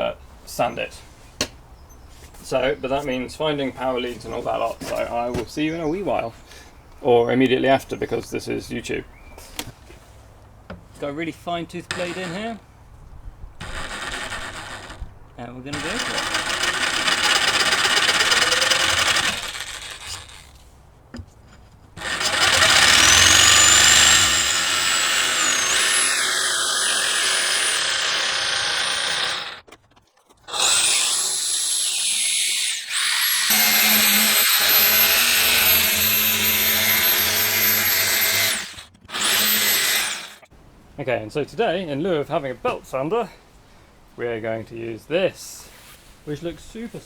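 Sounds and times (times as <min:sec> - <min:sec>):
jigsaw cutting: 0:11.9 - 0:12.6, 0:13.6 - 0:15.1, 0:15.8 - 0:20.6, 0:22.0 - 0:29.6, 0:30.5 - 0:40.5.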